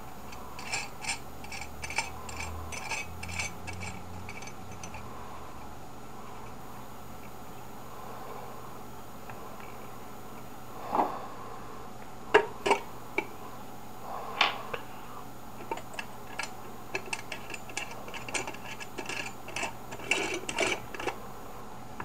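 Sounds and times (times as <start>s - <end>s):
small clicks and clatters: 15.6s - 21.2s.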